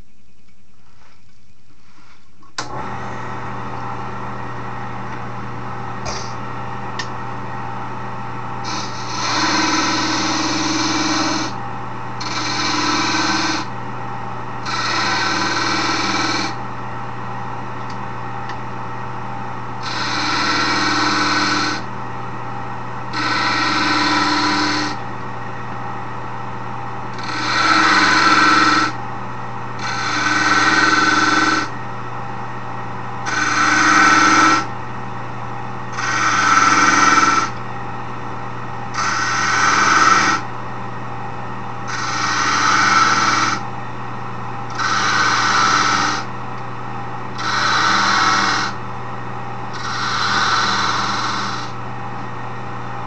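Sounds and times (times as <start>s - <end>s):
wood lathe motor hum: 8.6s - 11.6s, 12.2s - 13.8s, 14.6s - 16.7s, 19.8s - 21.9s, 23.1s - 25.1s, 27.0s - 29.0s, 29.8s - 31.8s, 33.2s - 34.7s, 35.9s - 37.6s, 38.9s - 40.5s, 41.8s - 43.7s, 44.7s - 46.4s, 47.3s - 48.8s, 49.7s - 51.8s
hand tool cutting spinning wood: 8.7s - 11.6s, 12.2s - 13.7s, 14.6s - 16.6s, 19.8s - 21.9s, 23.2s - 25.0s, 27.2s - 29.0s, 29.8s - 31.7s, 33.2s - 34.7s, 36.0s - 37.6s, 39.0s - 40.4s, 41.9s - 43.6s, 44.7s - 46.3s, 47.4s - 48.8s, 49.8s - 51.7s.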